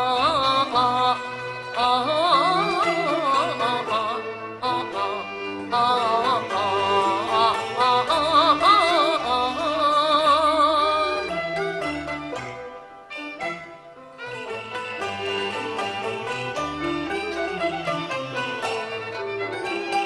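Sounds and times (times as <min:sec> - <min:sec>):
opera singing with vibrato: 0:00.0 - 0:11.7
instrumental accompaniment: 0:00.0 - 0:20.0.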